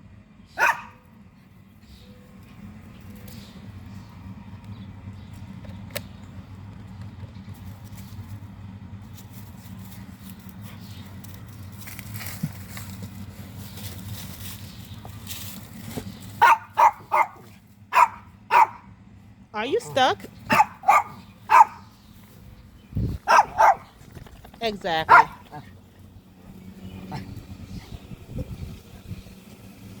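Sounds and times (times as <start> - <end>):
dog barking: 0.5 - 1.0, 16.4 - 18.9, 20.5 - 21.9, 23.2 - 24.0, 25.1 - 25.7.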